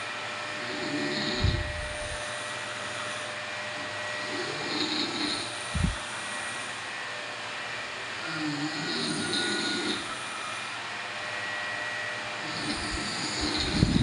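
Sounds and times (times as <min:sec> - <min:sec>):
person snoring: 0:00.6 - 0:02.2, 0:04.2 - 0:06.7, 0:08.2 - 0:10.2, 0:12.4 - 0:14.0.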